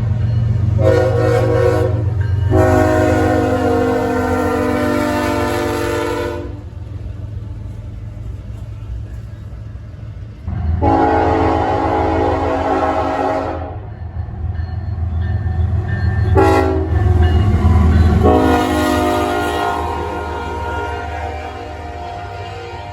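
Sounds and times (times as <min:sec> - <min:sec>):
train rumbling: 0:00.0 - 0:22.9
train air horn blasts: 0:00.8 - 0:06.6, 0:10.8 - 0:13.9, 0:16.4 - 0:17.0, 0:18.1 - 0:22.9.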